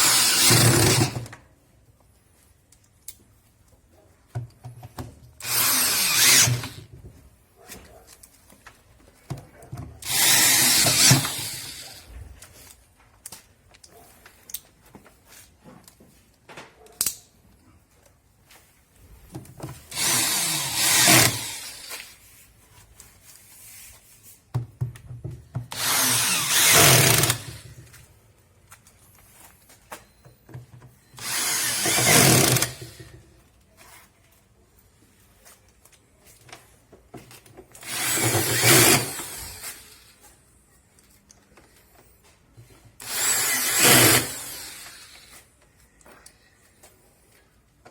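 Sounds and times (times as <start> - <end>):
power drill driving bolts: 0.0 - 1.4, 5.4 - 6.9, 10.0 - 12.1, 19.9 - 22.2, 25.7 - 27.8, 31.1 - 33.2, 37.8 - 40.2, 43.0 - 45.5.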